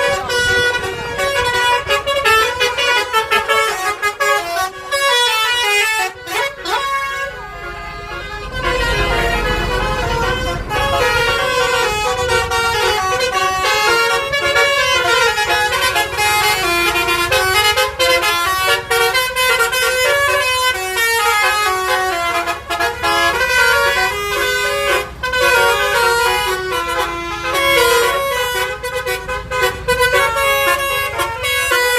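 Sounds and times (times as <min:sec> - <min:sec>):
low engine rumble: 0:00.0 - 0:31.9
multi-trumpet horn tune: 0:00.0 - 0:31.9.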